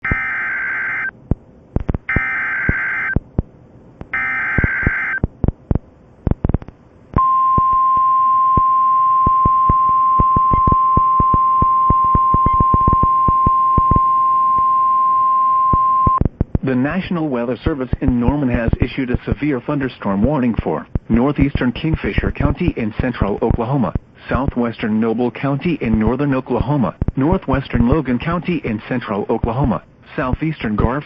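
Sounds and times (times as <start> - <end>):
steady warning alarm tone: 0.0 - 1.2, 2.1 - 3.2, 4.1 - 5.3, 7.2 - 16.2
crackling radio static: 0.0 - 31.0.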